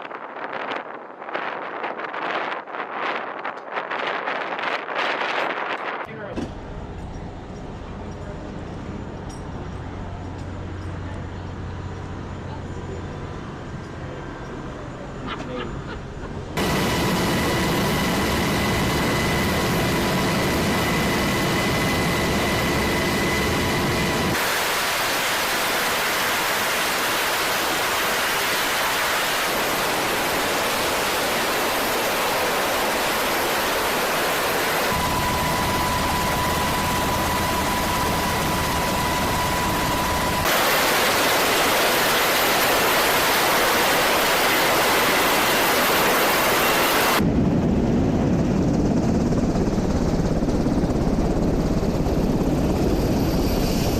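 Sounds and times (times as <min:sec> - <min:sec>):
wind and ship machinery rushing: 0:00.0 - 0:53.9
faint steady whine: 0:06.6 - 0:47.2.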